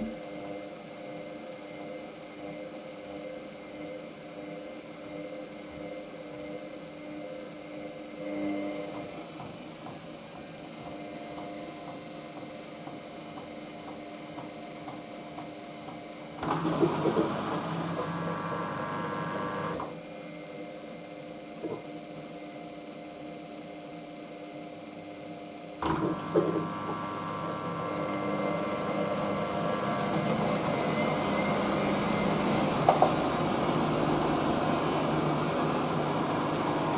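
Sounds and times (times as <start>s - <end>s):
washing machine spinning: 16.4s - 19.9s, 25.8s - 36.9s.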